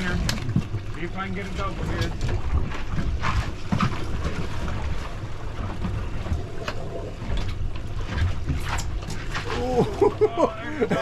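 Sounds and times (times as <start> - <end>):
boat engine rumble: 0.0 - 11.0.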